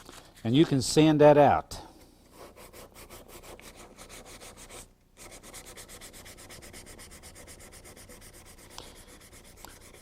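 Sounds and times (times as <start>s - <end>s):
sandpaper rubbing plastic: 2.4s - 10.0s.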